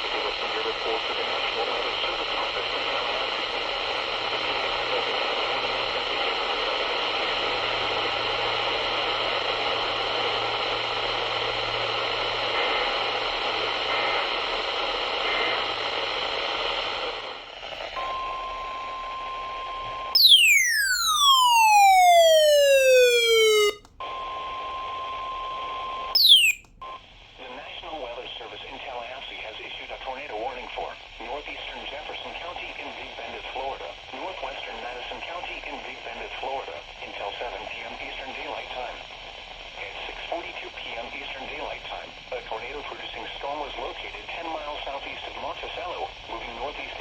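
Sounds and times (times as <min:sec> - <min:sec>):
radio static hiss: 0:00.0 - 0:07.5, 0:12.4 - 0:18.0, 0:39.7 - 0:47.0
falling pitch sweep: 0:20.2 - 0:23.8, 0:26.2 - 0:26.6
steady beep tone: 0:20.2 - 0:23.8, 0:26.2 - 0:26.6.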